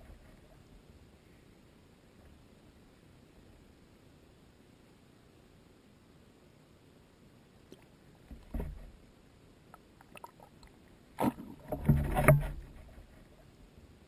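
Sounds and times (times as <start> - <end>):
water splashing and sloshing: 9.8 - 13.4.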